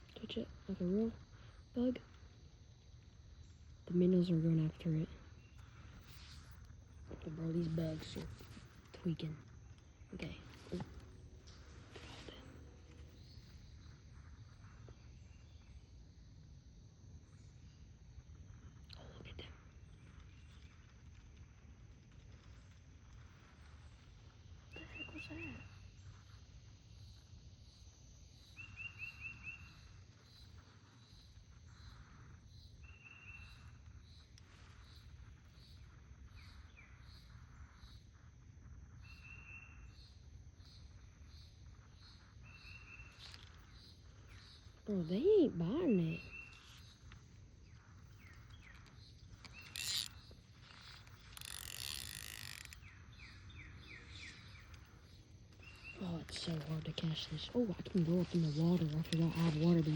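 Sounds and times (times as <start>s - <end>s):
low steady background hiss: 0.0s - 59.9s
bird chirping: 48.1s - 54.9s
creek ambience: 49.5s - 52.8s.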